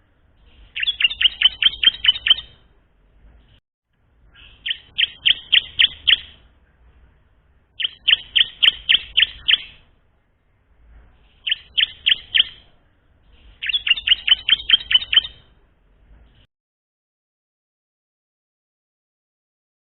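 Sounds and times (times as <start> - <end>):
bird singing sharp repeated notes: 0.4 - 2.7, 4.3 - 6.5, 7.7 - 9.9, 11.2 - 12.7, 13.3 - 15.6.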